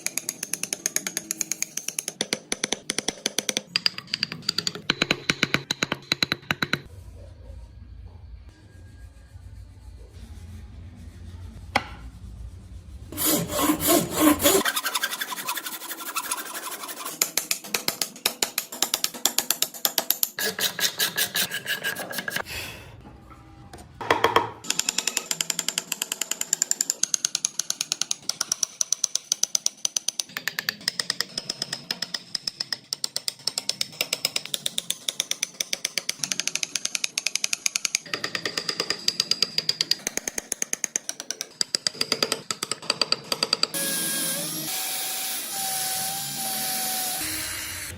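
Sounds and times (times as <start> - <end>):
hand tool rasping wood: 13.2 - 22.5.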